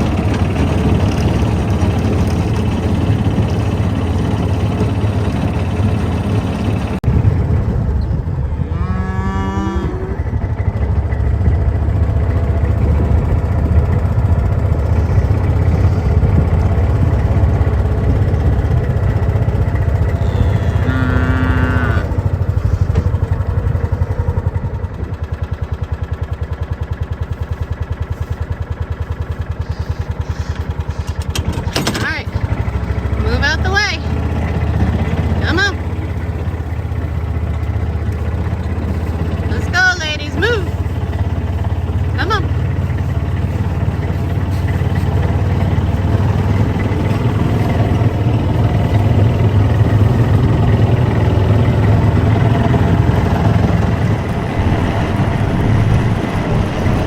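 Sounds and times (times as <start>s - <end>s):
tractor engine running: 0.0s - 57.0s
cow mooing: 8.6s - 10.4s, 20.0s - 22.5s.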